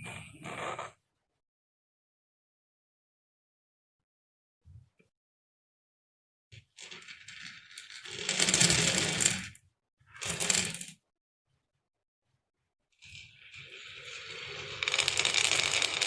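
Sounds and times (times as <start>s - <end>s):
marbles rolling down a track: 6.6s - 11.0s, 13.0s - 16.0s.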